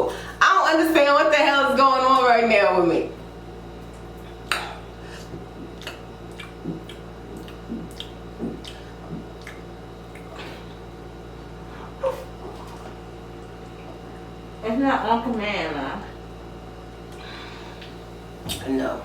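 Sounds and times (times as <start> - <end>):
mouth clicks: 5.7 - 10.3.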